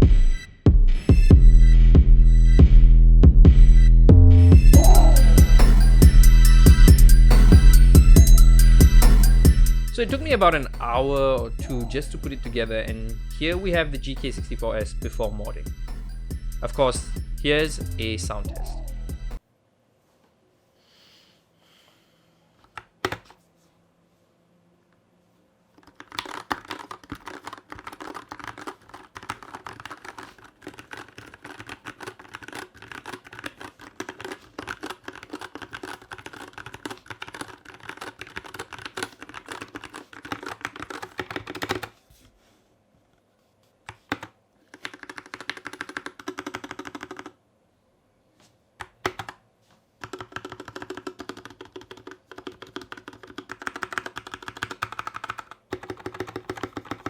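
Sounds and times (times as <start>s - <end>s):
typing on keyboard: 25.7s - 42.0s, 43.9s - 47.4s, 48.8s - 49.4s, 50.0s - 57.0s.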